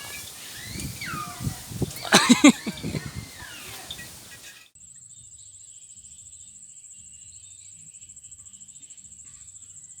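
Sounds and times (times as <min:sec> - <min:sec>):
insect trilling: 0:00.0 - 0:04.5.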